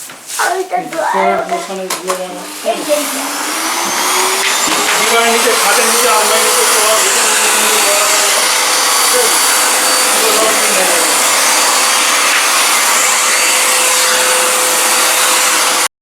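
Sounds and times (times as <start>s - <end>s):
vacuum cleaner running: 1.1s - 15.9s.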